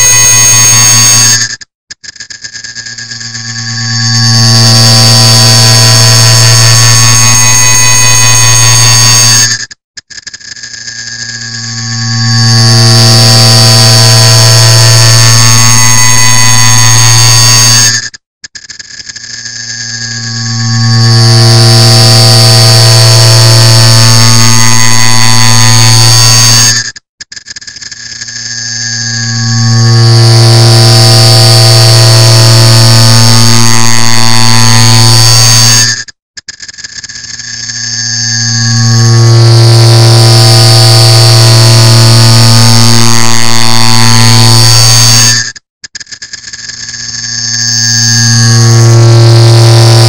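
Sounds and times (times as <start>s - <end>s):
distorted low buzz: 0.0s - 1.4s, 3.0s - 9.6s, 11.2s - 18.0s, 19.7s - 26.8s, 28.7s - 36.0s, 37.9s - 45.5s, 47.4s - 50.0s.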